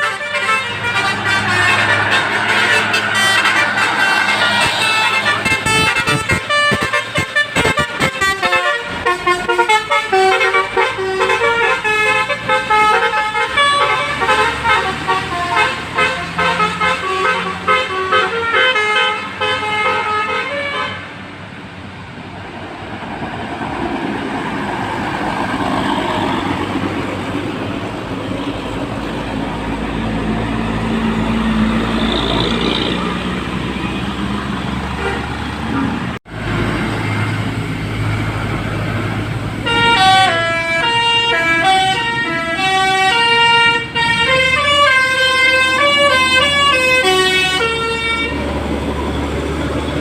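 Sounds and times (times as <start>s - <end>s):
musical bus horn melody: 0.0s - 21.2s, 34.9s - 36.2s, 39.6s - 48.5s
bus engine: 0.0s - 50.0s
road noise: 0.0s - 50.0s.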